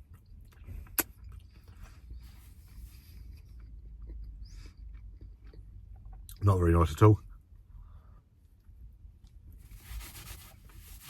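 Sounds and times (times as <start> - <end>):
man chewing food: 0.0 - 6.3.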